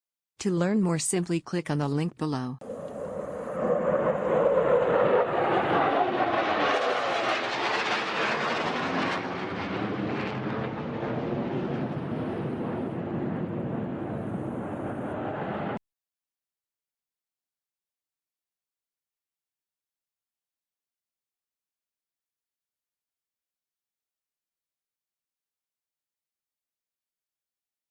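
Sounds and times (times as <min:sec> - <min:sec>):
jet aircraft engine whine: 0:02.6 - 0:15.8.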